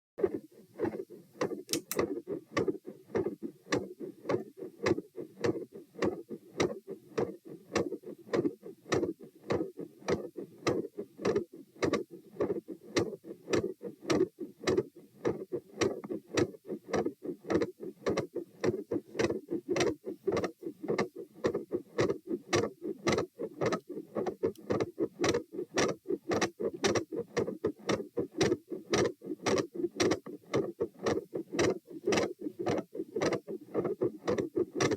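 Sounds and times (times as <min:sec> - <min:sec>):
heartbeat through stethoscope: 0:00.2 - 0:34.9.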